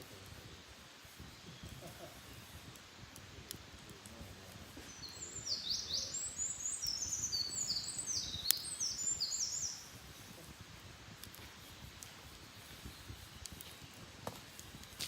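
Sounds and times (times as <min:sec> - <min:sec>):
songbird singing: 0:01.0 - 0:02.7, 0:04.0 - 0:10.6.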